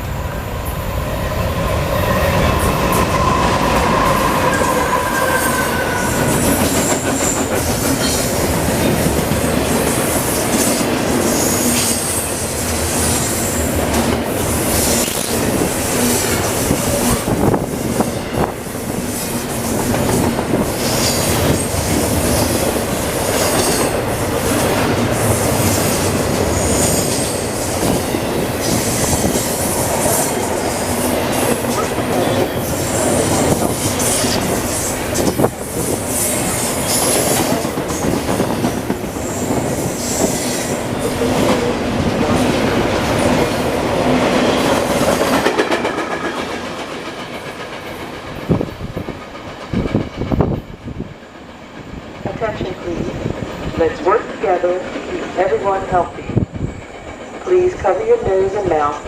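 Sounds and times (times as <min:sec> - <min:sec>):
freight train rumbling past: 0:00.0 - 0:59.0
train wheel squeal: 0:02.0 - 0:09.0, 0:09.9 - 0:13.6, 0:20.1 - 0:22.6, 0:25.2 - 0:38.5.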